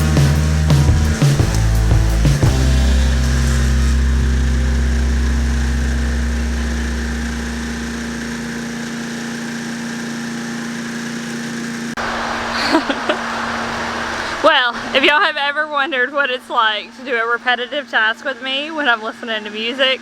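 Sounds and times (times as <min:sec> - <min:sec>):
small gas engine running: 0:00.0 - 0:15.2.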